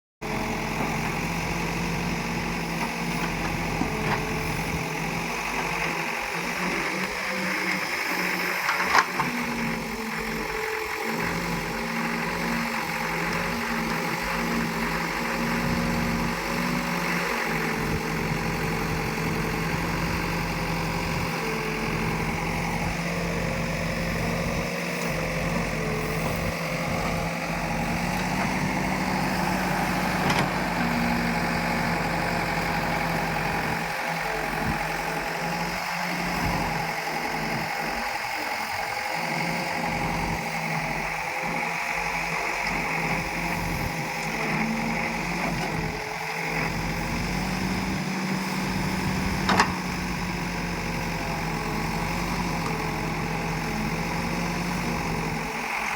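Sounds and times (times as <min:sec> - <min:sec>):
diesel engines running: 0:00.2 - 0:55.9.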